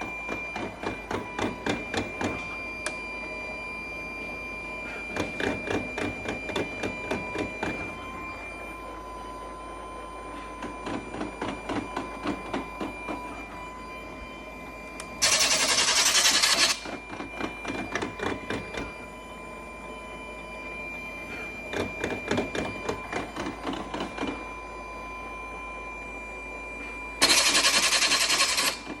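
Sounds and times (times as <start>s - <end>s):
faint steady machine whine: 0.0s - 29.0s
machine screeching: 15.2s - 17.0s, 27.2s - 29.0s
mechanical clicking and rattling: 27.2s - 28.9s.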